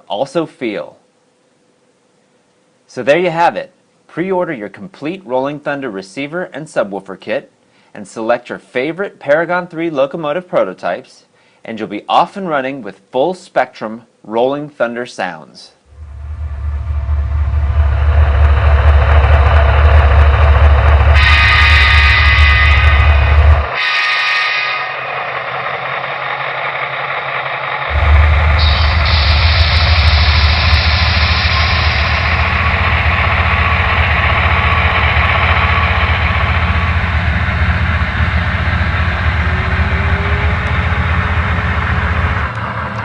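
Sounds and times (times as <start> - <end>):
model train engine rumble: 15.9 - 43.0.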